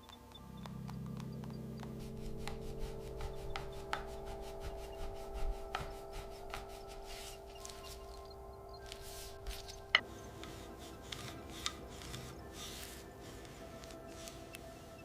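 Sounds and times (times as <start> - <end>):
hand rubbing metal part: 8.8 - 15.0.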